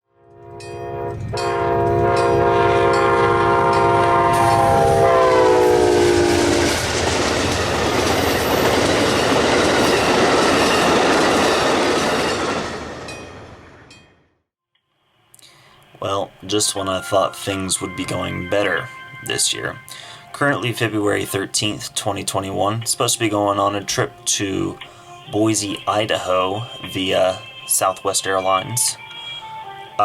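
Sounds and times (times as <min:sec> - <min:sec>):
train horn chord: 0:00.0 - 0:06.9, 0:16.7 - 0:30.0
rumble of train passing: 0:00.2 - 0:14.2.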